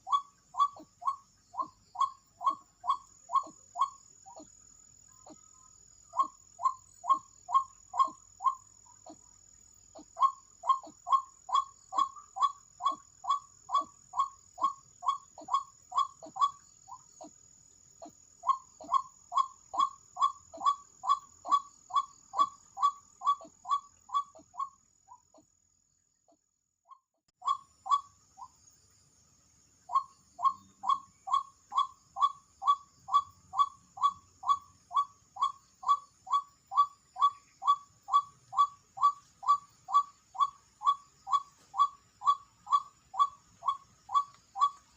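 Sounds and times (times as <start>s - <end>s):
waterhen calling: 0.0s - 4.5s, 9.9s - 17.4s, 18.0s - 24.8s, 27.4s - 28.6s, 29.9s - 44.9s
high insect trill: 0.0s - 25.5s, 27.4s - 44.9s.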